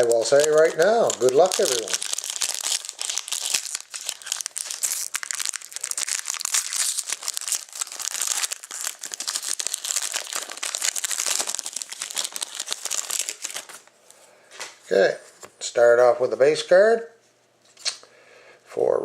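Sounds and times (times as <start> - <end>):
plastic wrapping crinkling and tearing: 0.0 - 13.9.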